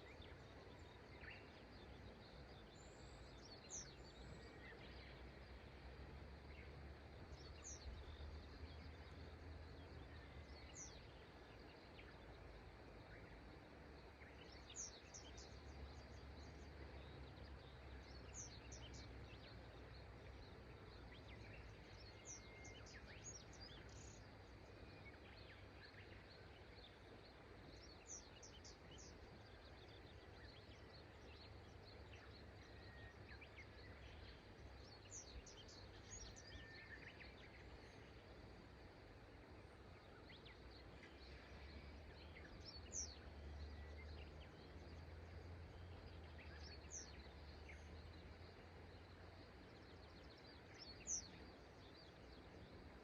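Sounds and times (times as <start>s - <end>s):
small birds chirping: 0.0s - 53.0s
flowing water: 4.2s - 37.0s.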